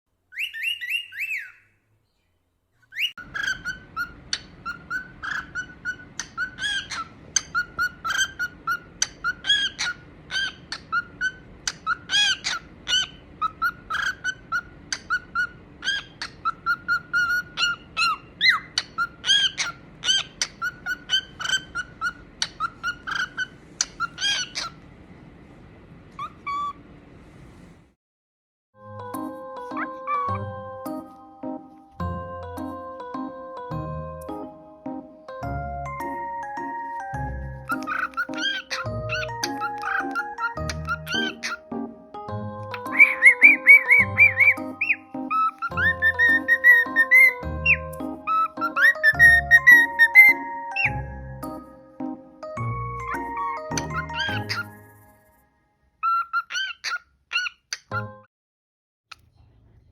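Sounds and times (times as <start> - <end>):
cockatiel chirping: 0.3 - 1.8, 2.8 - 24.8, 26.2 - 26.8, 29.7 - 30.5, 37.5 - 41.8, 42.7 - 51.0, 53.0 - 55.0, 56.0 - 58.1.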